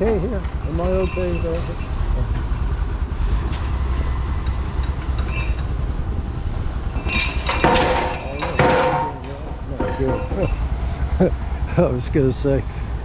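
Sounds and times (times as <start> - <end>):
diesel engine rumbling: 0.0 - 13.0.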